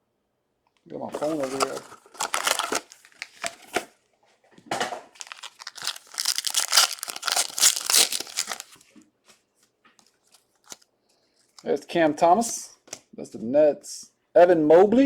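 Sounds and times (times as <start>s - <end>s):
plastic wrapper tearing and crinkling: 1.2s - 3.9s, 5.1s - 8.8s, 10.2s - 10.8s.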